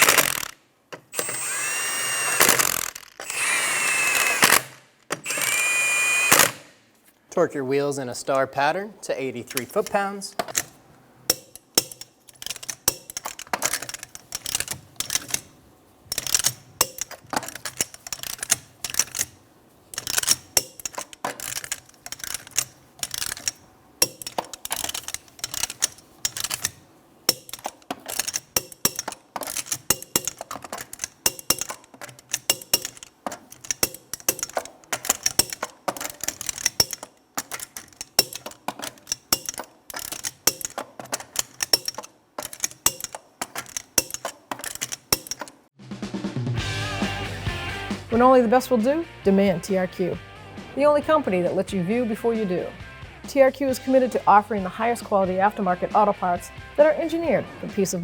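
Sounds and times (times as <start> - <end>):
ratchet wrench clicking: 0.0 - 6.7, 9.5 - 15.5, 16.1 - 45.6.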